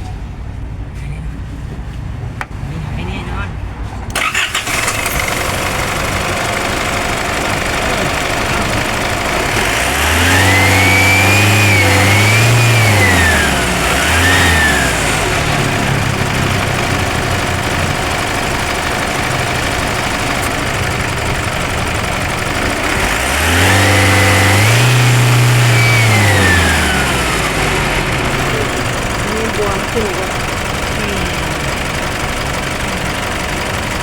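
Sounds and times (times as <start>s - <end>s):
diesel engine revving: 4.1s - 34.0s.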